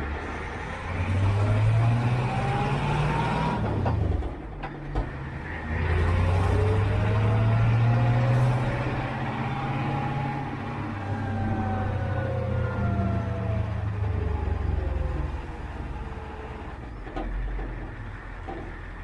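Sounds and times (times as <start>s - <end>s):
excavator diesel engine under load: 0.0s - 19.0s.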